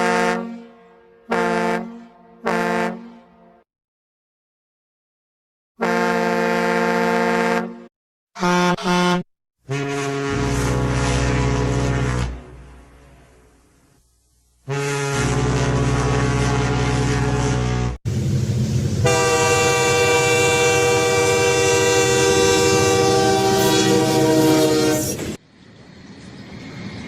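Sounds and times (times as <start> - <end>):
bright multi-note train horn: 0.0 - 3.6, 5.8 - 13.7, 14.6 - 18.0, 19.0 - 25.4
low train horn: 0.0 - 3.6, 5.8 - 13.7, 14.6 - 18.0, 19.0 - 25.4.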